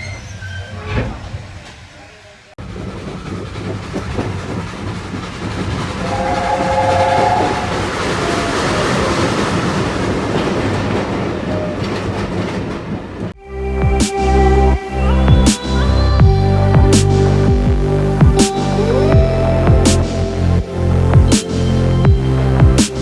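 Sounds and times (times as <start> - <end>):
steam train rumble and clatter: 0.0 - 13.4.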